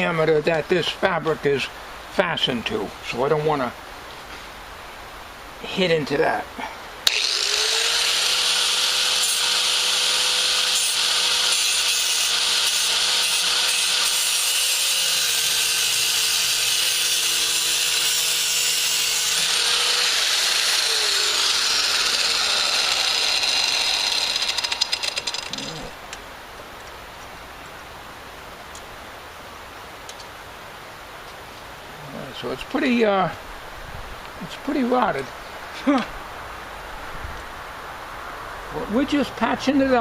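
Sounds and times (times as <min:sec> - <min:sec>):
cutoff wheel grinding metal: 0:07.1 - 0:26.0.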